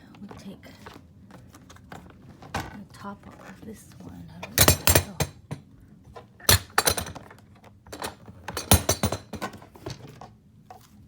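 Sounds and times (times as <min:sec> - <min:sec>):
plastic toolbox clacks and knocks: 0:04.4 - 0:10.8.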